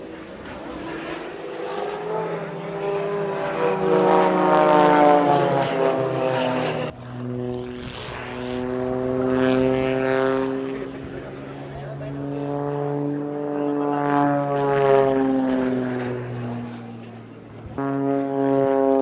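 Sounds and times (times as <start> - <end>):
propeller aircraft engine drone: 0.0 - 19.0.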